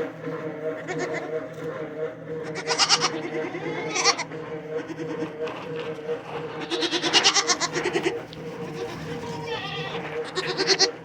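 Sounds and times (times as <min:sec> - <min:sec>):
goats bleating: 0:00.6 - 0:01.6, 0:02.4 - 0:05.3, 0:06.5 - 0:11.0.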